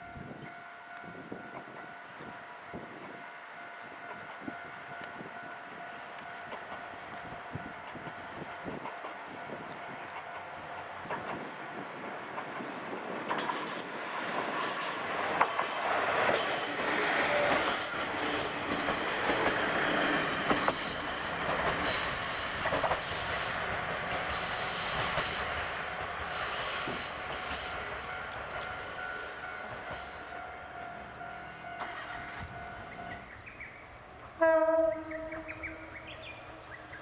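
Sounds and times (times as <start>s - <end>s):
diesel train passing: 0.0s - 37.0s
wheels squealing: 31.5s - 33.2s.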